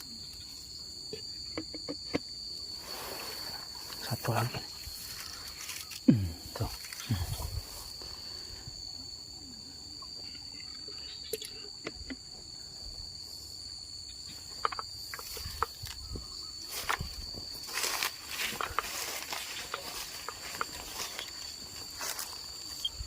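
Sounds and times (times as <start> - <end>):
insects chirring: 0.0 - 23.0
small clicks and knocks: 14.6 - 16.0.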